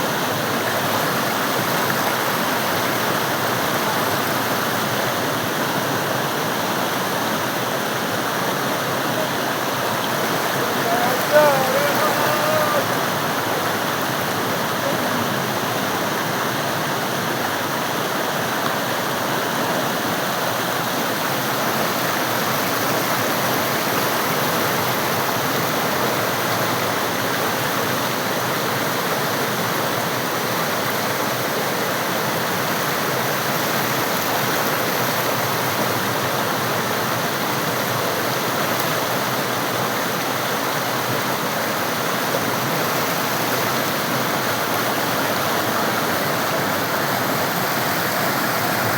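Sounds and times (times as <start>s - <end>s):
river water rushing and splashing: 0.0s - 48.9s.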